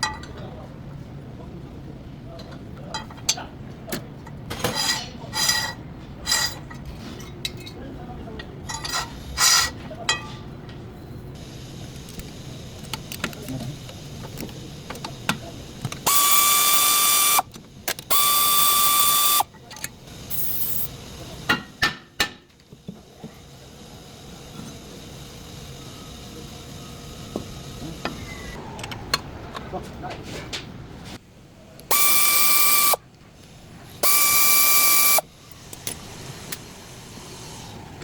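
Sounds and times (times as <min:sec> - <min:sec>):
mechanical tool bursts: 0:16.0 - 0:17.5, 0:18.1 - 0:19.5, 0:31.9 - 0:33.0, 0:34.0 - 0:35.2
power tool whining: 0:16.1 - 0:17.4, 0:18.1 - 0:19.5, 0:31.9 - 0:33.0, 0:34.0 - 0:35.2.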